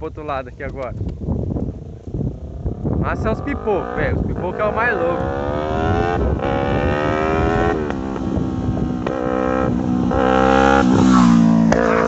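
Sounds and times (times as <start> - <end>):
motorcycle accelerating: 1.2 - 12.0
sharp exhaust pops: 7.8 - 9.4.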